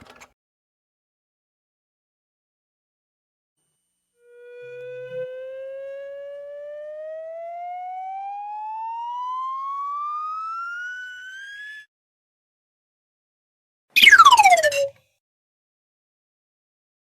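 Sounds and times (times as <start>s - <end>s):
cartoon whistle gliding upward: 4.2s - 11.9s, 14.0s - 14.9s.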